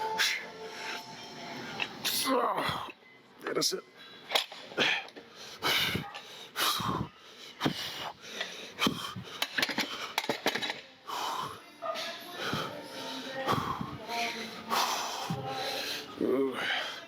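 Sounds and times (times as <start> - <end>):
man breathing hard wheezing: 4.1 - 10.4.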